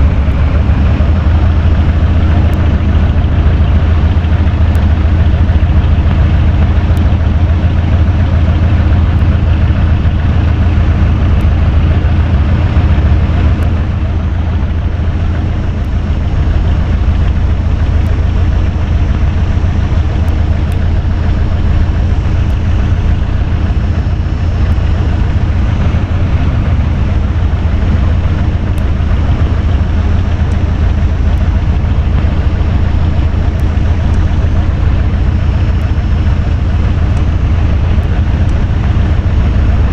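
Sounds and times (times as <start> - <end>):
electric fan running: 0.0 - 39.9.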